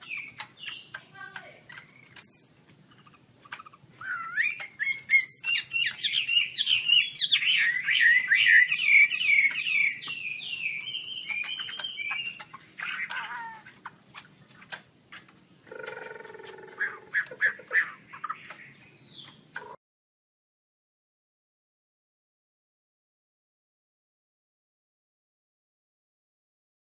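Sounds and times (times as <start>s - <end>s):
low buzzy bird call: 0.0s - 19.8s
sharp clicks: 0.0s - 19.8s
bird singing whistled phrases: 4.0s - 13.7s.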